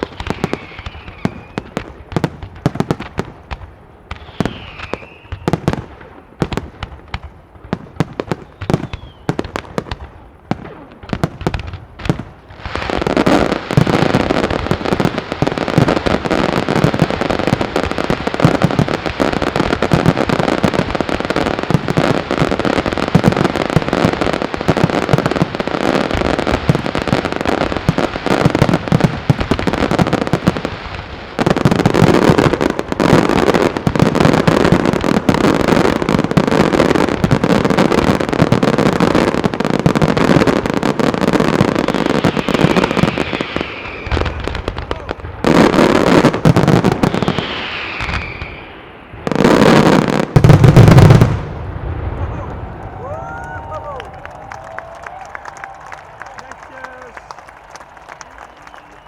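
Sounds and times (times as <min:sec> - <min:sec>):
fireworks bangs and crackling: 0:00.0 - 0:59.0.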